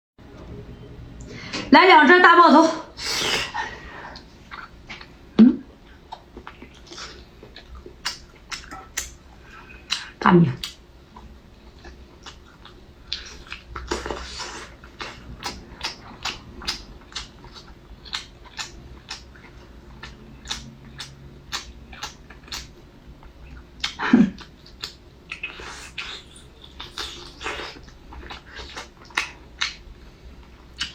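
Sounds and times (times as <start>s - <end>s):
chewing and wet mouth sounds: 4.0s - 30.9s.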